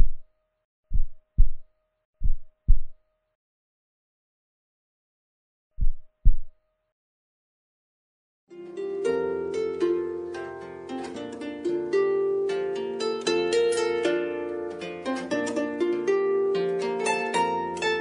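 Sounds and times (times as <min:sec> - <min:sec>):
low thuds: 0:00.0 - 0:00.3, 0:00.9 - 0:01.6, 0:02.2 - 0:03.0, 0:05.8 - 0:06.5
plucked harp-like music: 0:08.5 - 0:18.0.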